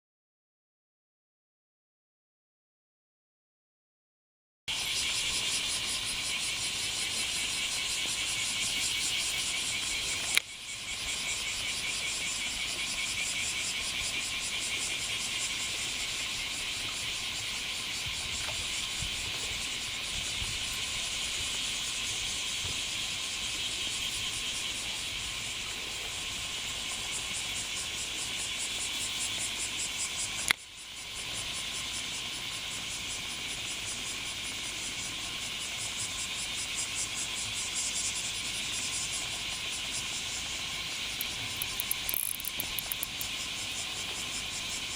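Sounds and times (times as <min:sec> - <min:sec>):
cicadas buzzing: 0:04.7 - 0:44.9
sharp click: 0:10.2 - 0:10.5, 0:41.2 - 0:43.3.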